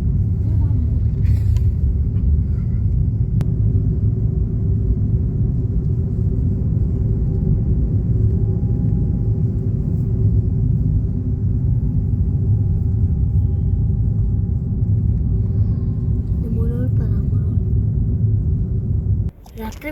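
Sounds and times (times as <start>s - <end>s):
moving vehicle rumble: 0.0s - 19.9s
faint steady tone: 12.0s - 16.2s.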